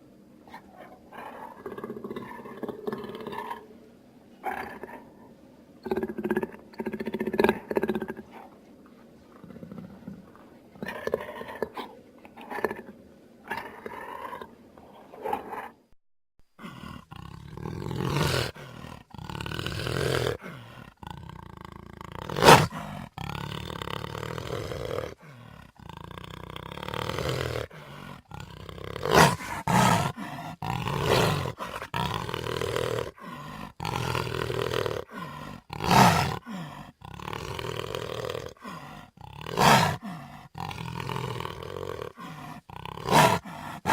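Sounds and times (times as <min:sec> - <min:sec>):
dinosaur growls: 0:00.5 - 0:03.7, 0:05.8 - 0:08.4, 0:16.6 - 0:43.9
dinosaur roars: 0:16.6 - 0:43.9.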